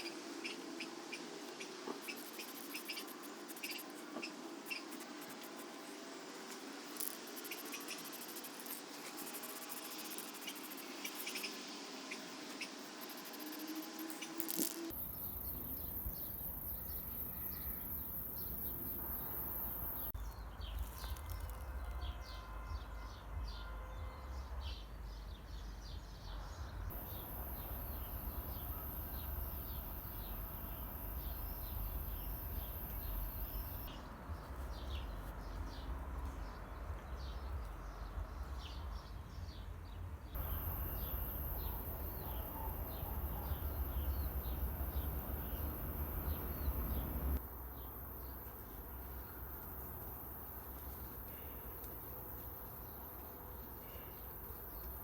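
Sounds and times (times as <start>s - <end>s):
birds chirping: 26.9s - 35.9s, 40.4s - 55.0s
steady low rumble: 40.4s - 47.6s.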